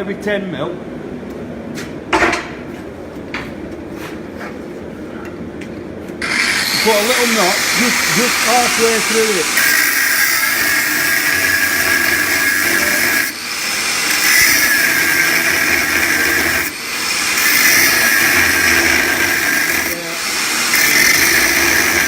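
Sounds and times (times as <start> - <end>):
power tool cutting steel bar: 6.2 - 22.0.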